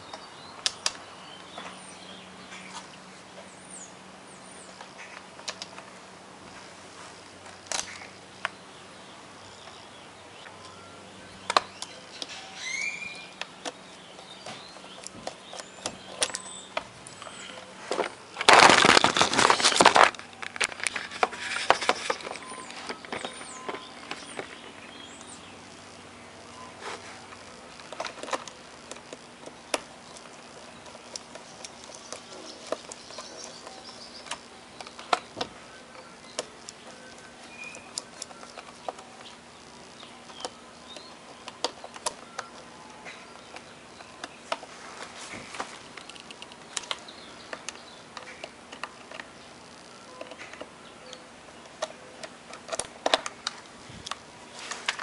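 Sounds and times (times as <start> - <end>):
faint steady hum: 0.0 - 55.0
small parts and tools clicking: 14.8 - 25.3, 27.3 - 44.7, 45.5 - 55.0.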